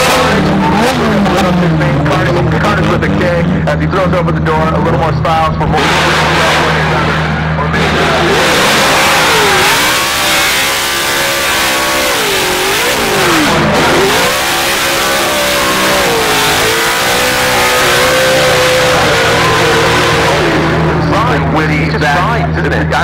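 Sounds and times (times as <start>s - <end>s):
car engine revving hard: 0.0s - 22.2s.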